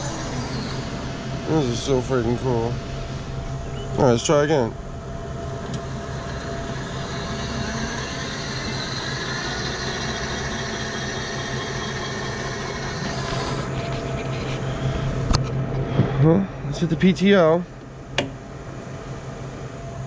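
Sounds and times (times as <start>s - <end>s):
electric mower whining: 0.0s - 15.6s.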